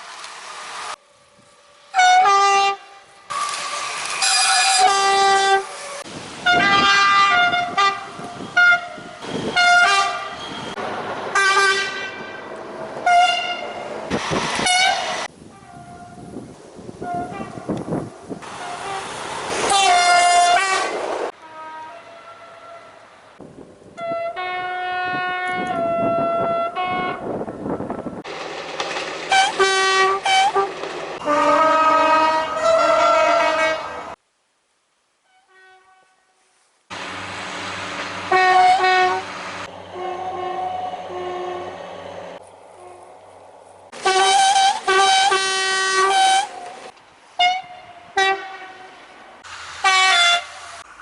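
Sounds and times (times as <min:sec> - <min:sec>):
passing trains rumbling: 0:00.0 - 0:34.2, 0:36.9 - 0:51.0
train horn blasts: 0:01.9 - 0:03.1, 0:04.2 - 0:10.6, 0:11.4 - 0:13.8, 0:14.6 - 0:16.3, 0:17.0 - 0:17.7, 0:18.6 - 0:23.0, 0:24.0 - 0:27.8, 0:29.3 - 0:34.2, 0:35.2 - 0:36.4, 0:38.3 - 0:39.3, 0:39.9 - 0:41.8, 0:44.0 - 0:46.7, 0:47.4 - 0:48.9, 0:49.8 - 0:50.6.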